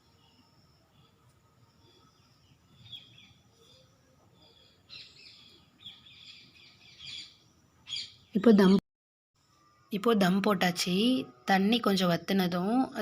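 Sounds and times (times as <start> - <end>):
faint bird chirping: 0.0 - 8.8.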